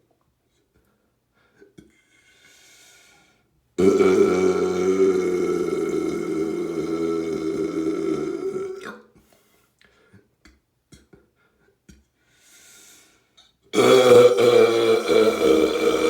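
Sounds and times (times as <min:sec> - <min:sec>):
person burping: 0:03.8 - 0:09.2, 0:13.7 - 0:16.0.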